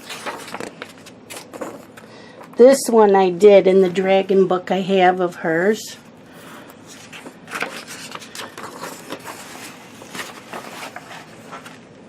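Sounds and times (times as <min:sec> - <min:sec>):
paper pages rustling: 0:00.0 - 0:02.5, 0:06.3 - 0:11.9.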